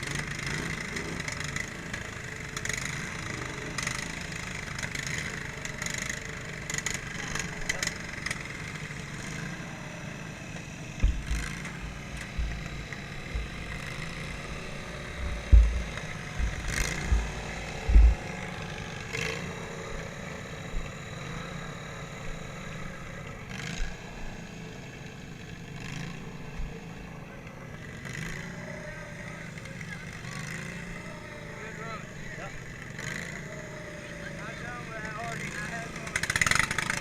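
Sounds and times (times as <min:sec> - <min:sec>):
lawnmower engine running: 0:00.0 - 0:37.0
heavy low thumps: 0:11.0 - 0:18.3.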